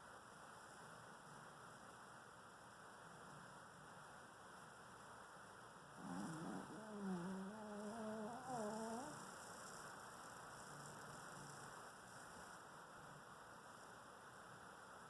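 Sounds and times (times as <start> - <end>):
faint steady hiss: 0.0 - 15.0
person moaning in sleep: 6.0 - 9.2.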